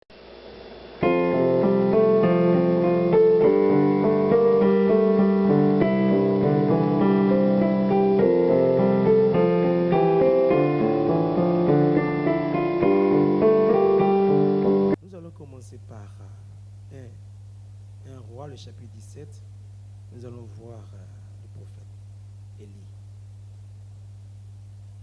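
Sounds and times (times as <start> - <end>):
piano chords: 1.0 - 15.0.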